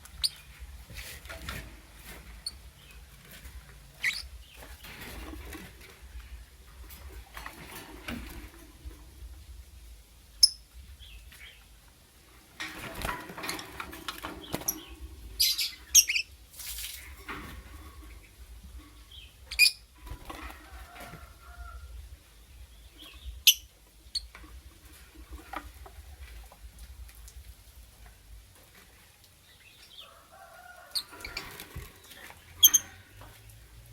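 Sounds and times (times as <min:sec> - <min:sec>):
bird high-pitched chirps: 0:15.4 - 0:16.3.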